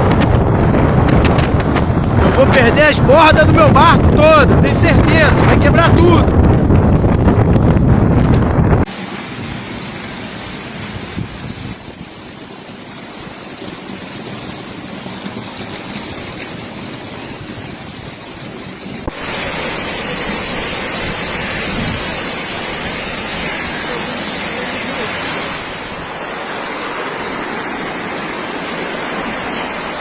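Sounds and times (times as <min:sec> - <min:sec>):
heavy rain: 0:00.0 - 0:30.0
rough sea rushing: 0:00.0 - 0:30.0.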